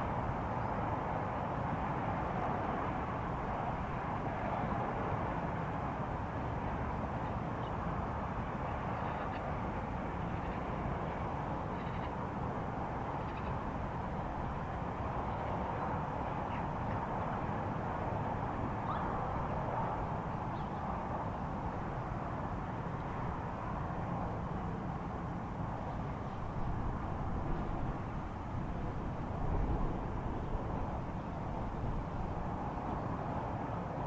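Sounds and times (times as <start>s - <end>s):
outdoor rumble and hiss: 0.0s - 34.0s.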